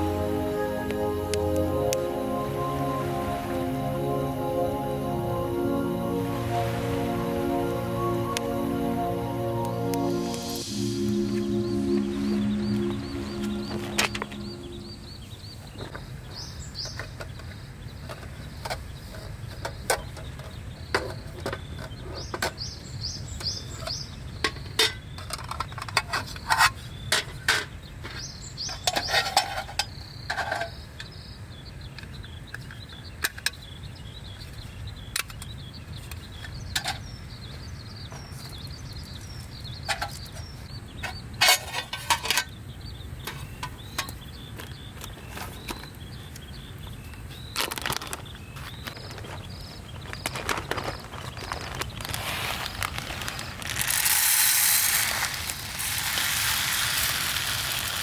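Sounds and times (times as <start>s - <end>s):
high chirps: 0.0s - 15.6s.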